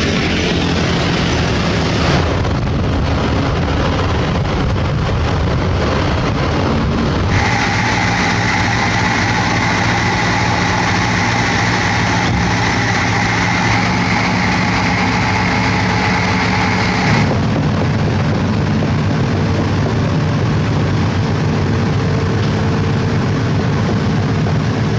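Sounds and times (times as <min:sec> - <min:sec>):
heavy diesel engine running: 0:00.0 - 0:24.9
high whine: 0:00.0 - 0:24.9.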